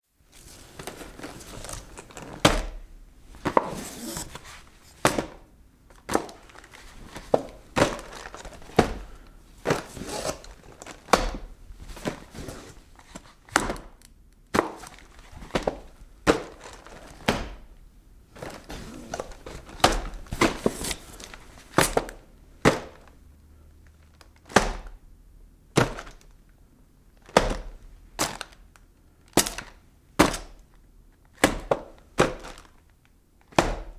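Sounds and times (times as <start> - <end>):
cardboard scraping and rustling: 0.4 - 2.8, 3.4 - 5.4, 6.0 - 13.4, 18.4 - 22.2
cardboard boxes thudding: 0.5 - 13.0, 18.3 - 23.0.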